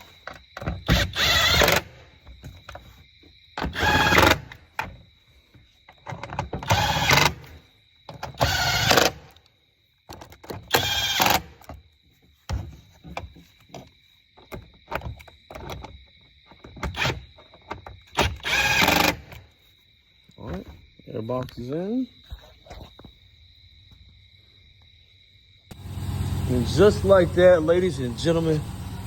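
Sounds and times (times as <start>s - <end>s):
power impact driver bursts: 0.9s - 2.0s, 8.4s - 9.3s, 10.7s - 11.6s, 18.3s - 19.3s
plastic parts clicking and knocking: 5.9s - 9.5s, 10.1s - 11.8s, 12.5s - 19.4s.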